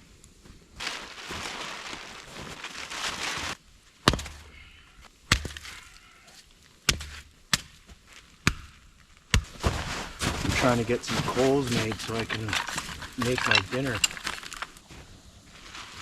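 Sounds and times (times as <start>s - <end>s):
sticks rustling and crunching: 0.8s - 4.4s, 9.4s - 14.9s
sticks cracking: 11.6s - 14.8s.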